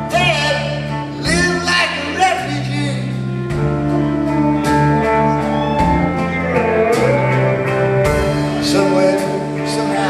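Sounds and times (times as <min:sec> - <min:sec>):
live rock band playing: 0:00.0 - 0:10.0
steady bass: 0:00.0 - 0:10.0
ringing guitars: 0:03.2 - 0:10.0.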